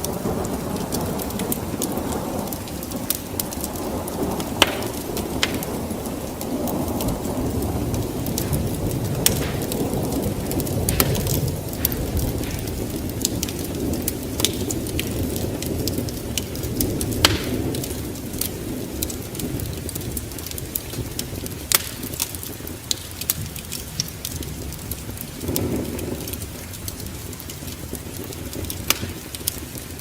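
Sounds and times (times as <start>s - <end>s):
fire popping: 0.0s - 30.0s
wood fire crackling: 0.0s - 30.0s
steady low rumble: 3.8s - 18.7s.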